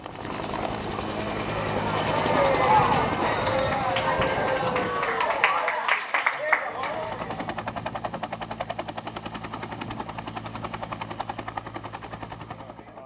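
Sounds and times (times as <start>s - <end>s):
helicopter rotor beating: 0.0s - 13.0s.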